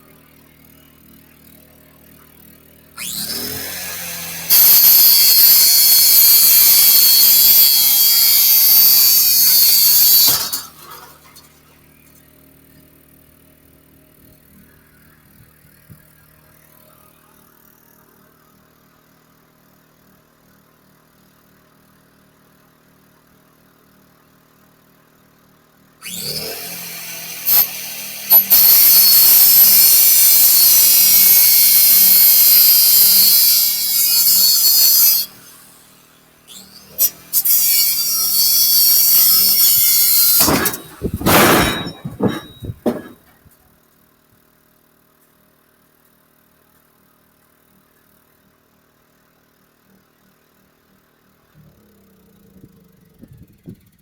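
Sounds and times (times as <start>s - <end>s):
angle grinder cutting metal: 3.0s - 11.7s, 26.0s - 43.3s
faint low hum: 49.9s - 54.0s.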